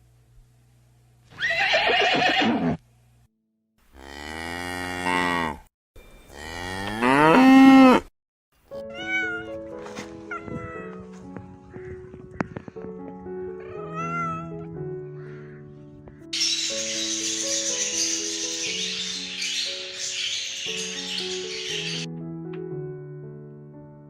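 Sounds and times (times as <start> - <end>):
cow mooing: 3.9 - 5.7, 6.3 - 8.1
light music: 8.6 - 24.0
cat meowing: 8.8 - 9.6, 10.3 - 11.0, 13.6 - 14.7.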